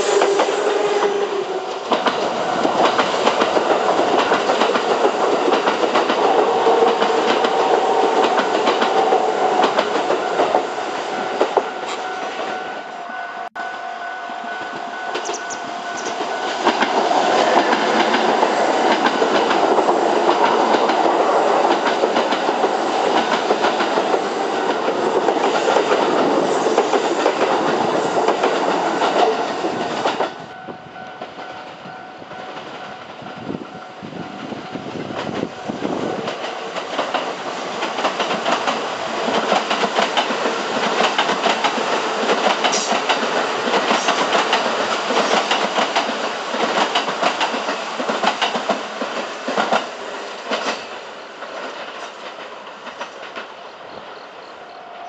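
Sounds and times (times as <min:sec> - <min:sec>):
train wheels clacking over rails: 0:00.0 - 0:12.7, 0:14.5 - 0:54.2.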